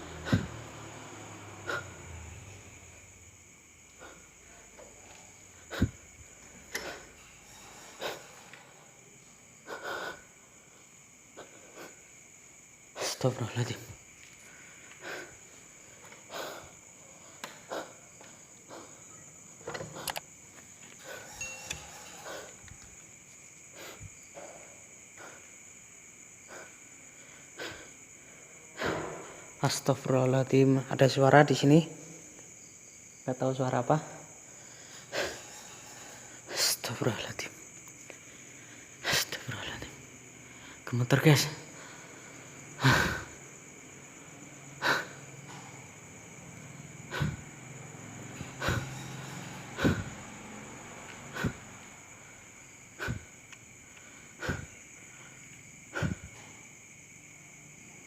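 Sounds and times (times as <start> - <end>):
crickets chirring: 0.0 - 58.0
person breathing sharply: 53.0 - 53.3, 54.1 - 56.3.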